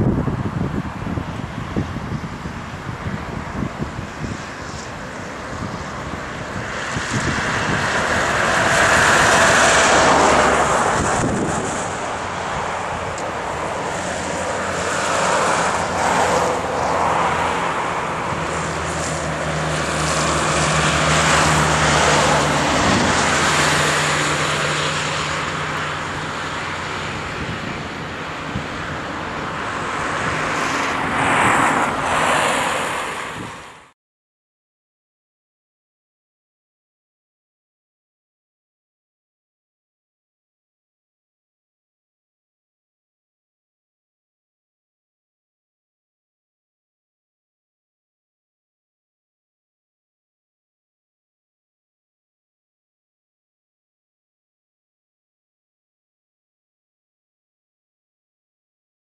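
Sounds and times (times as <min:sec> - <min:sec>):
low engine hum: 0:00.0 - 0:33.9
vehicles rushing past: 0:00.0 - 0:34.0.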